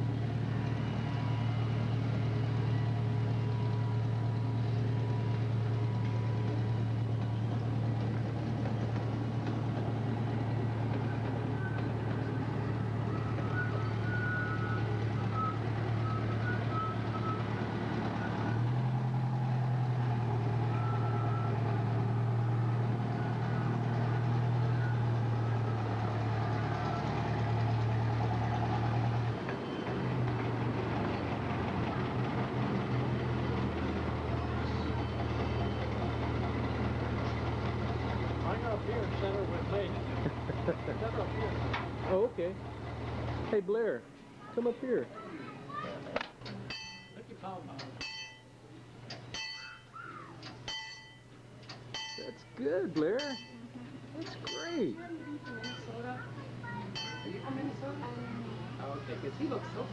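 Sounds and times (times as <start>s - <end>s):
train engine humming: 0.0s - 59.9s.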